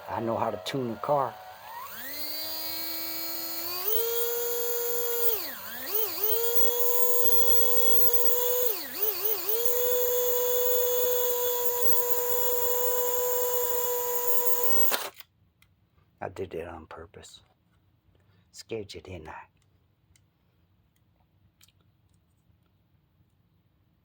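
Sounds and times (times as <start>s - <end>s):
slot car motor whining: 0.0s - 15.1s.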